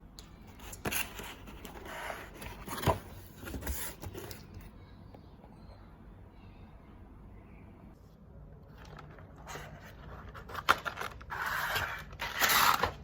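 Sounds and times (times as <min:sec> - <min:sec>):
packaging rustling and scraping: 0:08.7 - 0:13.0.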